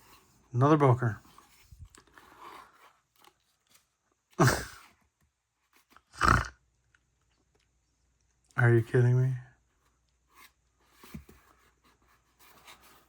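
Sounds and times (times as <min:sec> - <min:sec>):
man groaning: 0:04.4 - 0:04.8.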